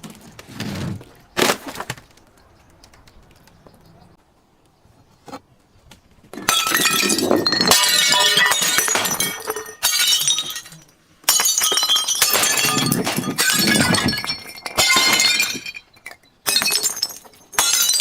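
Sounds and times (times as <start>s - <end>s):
glass bottles breaking: 6.4s - 18.0s
glass shards tinkling: 6.4s - 18.0s.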